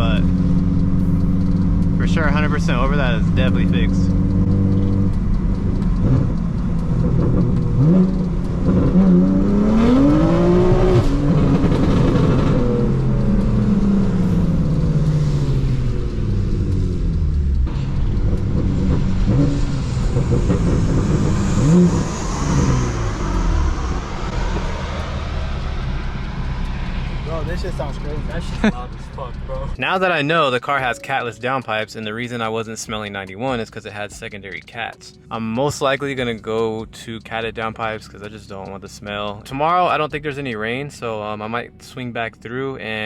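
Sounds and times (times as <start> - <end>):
car engine revving loudly: 0.0 - 29.7.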